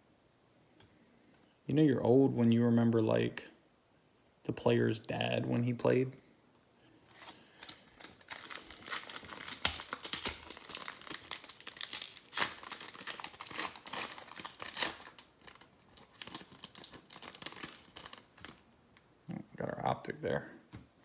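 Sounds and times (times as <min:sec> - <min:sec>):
foil wrapper tearing and crinkling: 0:07.1 - 0:18.6.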